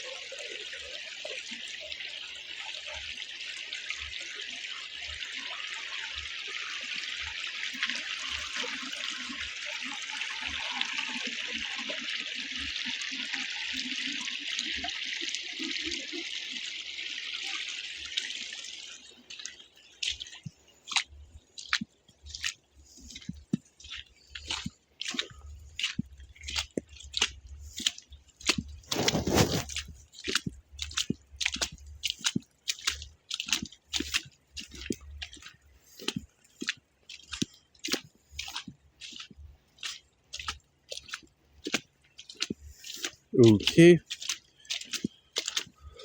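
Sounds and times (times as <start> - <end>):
creek water flowing: 0.0 - 46.0
footsteps crunching in snow: 28.5 - 31.0.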